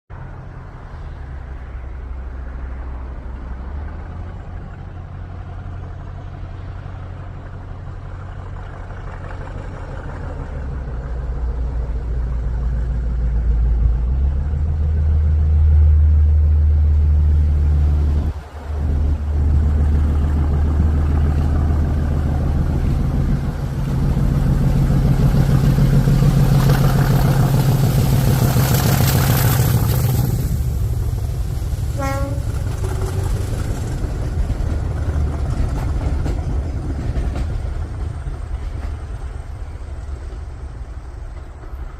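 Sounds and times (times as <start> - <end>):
diesel locomotive engine working hard: 0.1 - 41.9
rushing hiss: 20.1 - 41.9.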